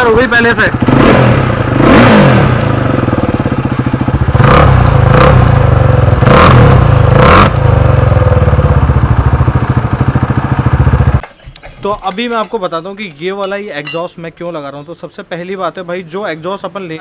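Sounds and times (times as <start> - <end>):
motorcycle engine idling and revving: 0.0 - 12.1.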